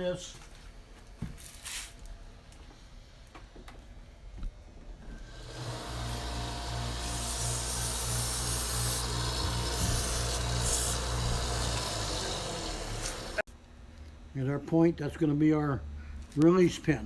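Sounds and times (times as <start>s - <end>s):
electric sander motor humming: 5.4s - 13.4s
wooden dowel rasping on abrasive: 5.4s - 13.4s.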